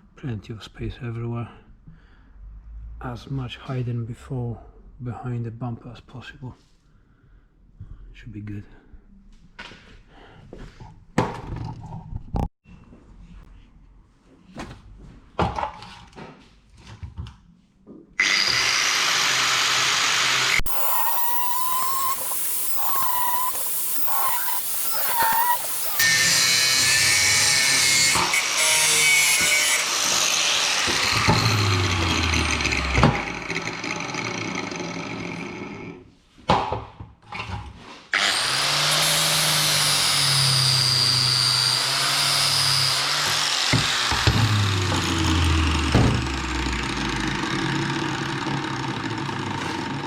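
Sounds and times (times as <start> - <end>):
power tool grinding metal: 18.2 - 35.8, 38.2 - 50.0.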